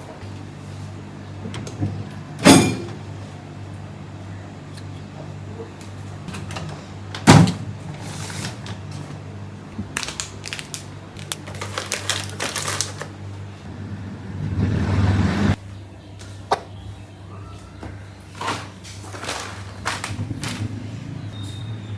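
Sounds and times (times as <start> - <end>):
steady low hum: 0.0 - 17.5, 19.5 - 21.9
rushing noise: 13.7 - 15.6.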